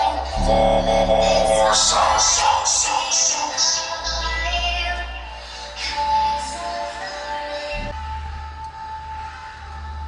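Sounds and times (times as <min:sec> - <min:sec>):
electro funk music with heavy bass: 0:00.0 - 0:10.0
held synth note: 0:00.3 - 0:03.1.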